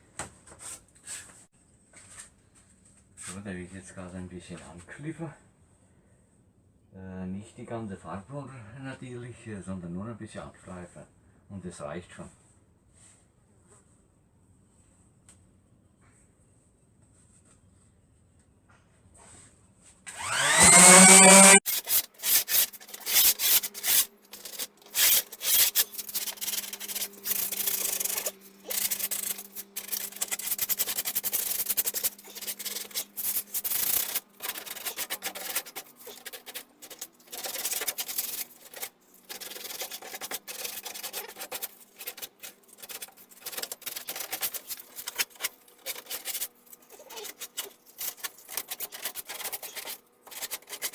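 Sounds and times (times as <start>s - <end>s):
power sander on wood: 20.1s - 50.9s.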